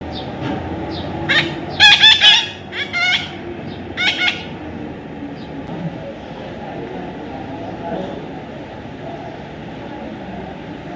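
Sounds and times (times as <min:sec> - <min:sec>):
parrot squawking: 0:01.2 - 0:04.6.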